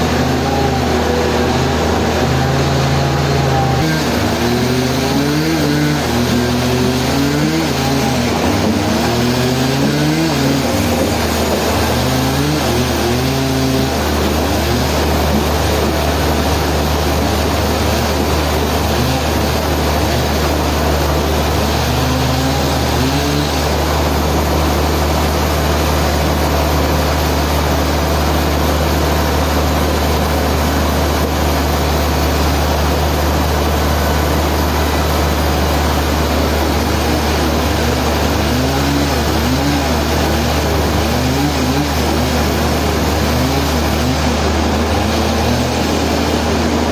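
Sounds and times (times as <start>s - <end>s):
sawmill machinery humming: 0.0s - 46.9s.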